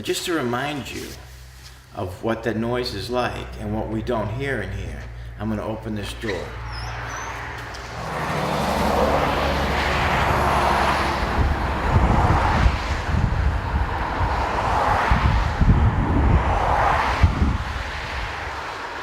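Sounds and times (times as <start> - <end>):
busy road traffic: 4.5 - 19.0
low rumble: 7.7 - 18.4.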